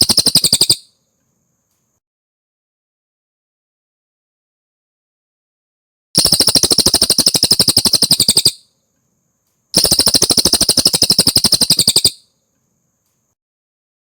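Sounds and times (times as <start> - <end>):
songbird trilling: 0.0 - 0.9, 6.2 - 8.6, 9.8 - 12.2.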